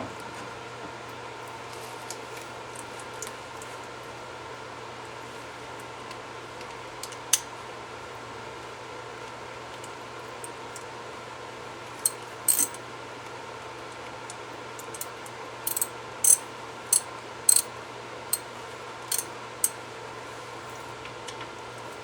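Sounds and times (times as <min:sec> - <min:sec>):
metallic clinks of tools: 0:12.1 - 0:12.8, 0:17.0 - 0:17.7.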